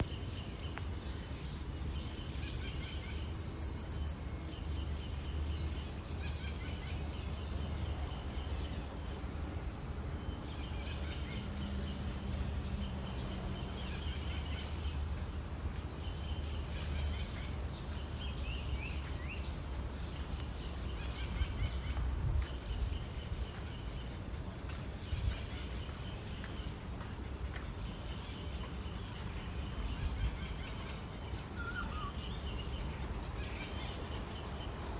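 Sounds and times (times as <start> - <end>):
cicadas droning: 0.0 - 34.9
birds calling: 29.8 - 34.5.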